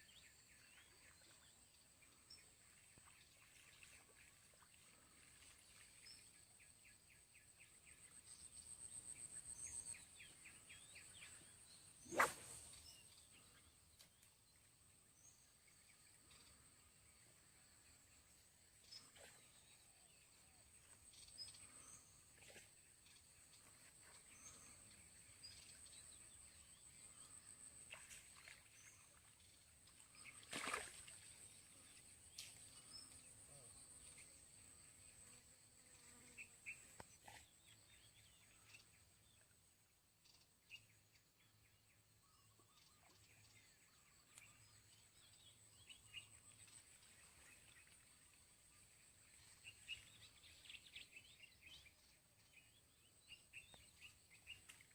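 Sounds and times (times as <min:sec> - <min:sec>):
bird chirps: 0:08.7 - 0:13.6.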